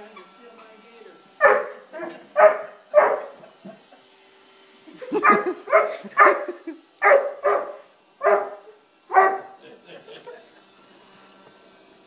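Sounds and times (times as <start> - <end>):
dog barking: 1.4 - 3.4, 5.2 - 9.6.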